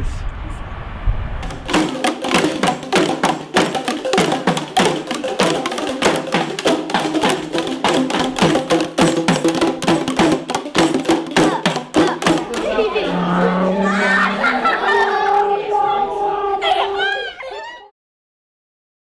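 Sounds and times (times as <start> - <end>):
quick percussion strikes: 1.4 - 15.2
steady pitched notes: 1.5 - 17.1.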